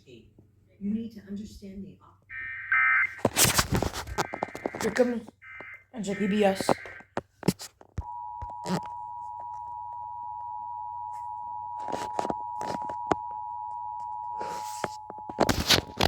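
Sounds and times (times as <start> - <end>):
clicks and crinkling: 3.1 - 5.8, 14.8 - 16.0.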